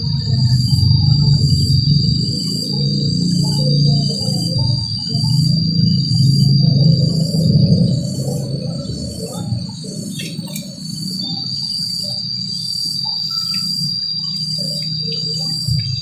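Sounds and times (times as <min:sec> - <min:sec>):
low rumble: 0:00.0 - 0:11.4
high-pitched drone: 0:00.0 - 0:16.0
insects chirping: 0:00.0 - 0:16.0.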